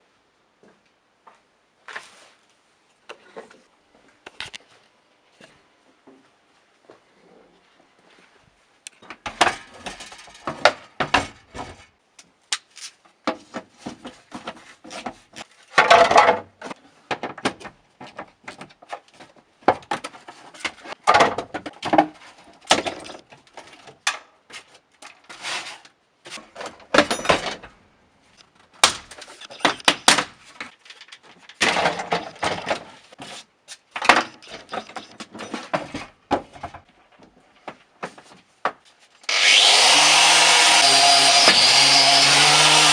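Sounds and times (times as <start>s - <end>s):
knocks and scrapes on metal floor: 9.1s - 11.9s, 29.1s - 38.5s.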